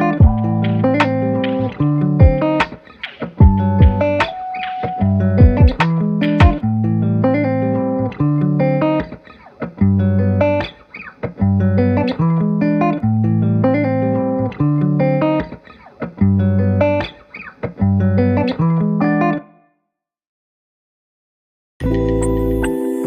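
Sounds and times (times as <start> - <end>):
plucked guitar tune: 0.0 - 19.6, 21.8 - 23.0
bass line: 0.2 - 2.5, 3.4 - 4.2, 5.0 - 7.6.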